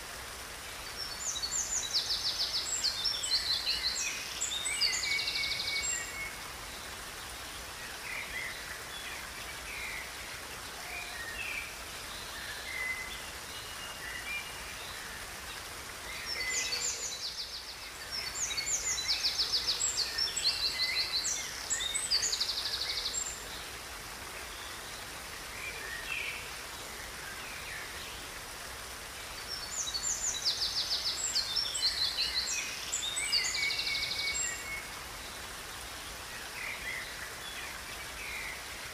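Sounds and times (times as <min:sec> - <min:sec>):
running river water: 0:00.0 - 0:38.9
songbirds singing: 0:00.5 - 0:38.9.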